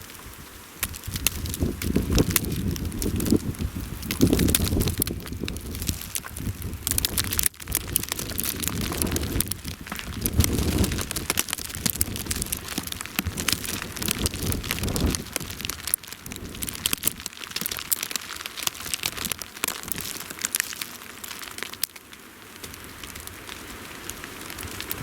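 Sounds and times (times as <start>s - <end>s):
snow pattering on microphone: 0.0s - 25.0s
wind buffeting microphone: 0.3s - 17.9s.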